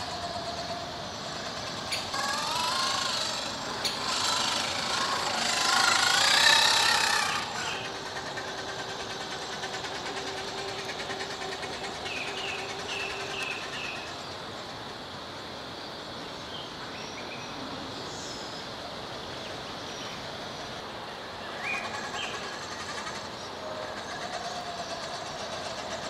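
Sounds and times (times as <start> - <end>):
electric motor whining: 0.0 - 8.3.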